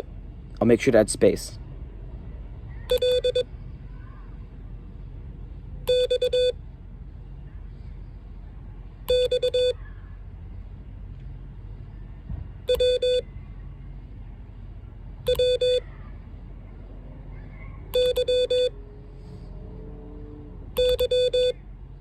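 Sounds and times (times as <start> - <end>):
morse code beeps: 2.9 - 3.5, 5.9 - 6.6, 9.1 - 9.8, 12.7 - 13.2, 15.2 - 15.8, 17.9 - 18.7, 20.8 - 21.6.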